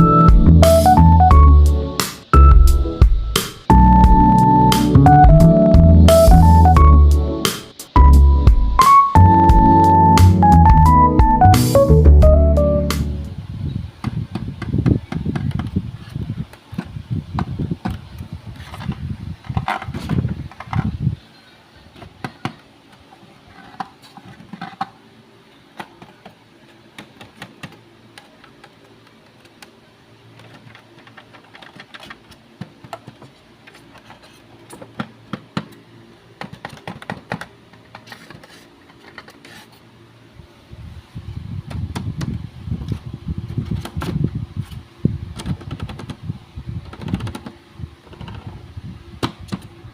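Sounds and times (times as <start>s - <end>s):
background music: 0.0s - 13.3s.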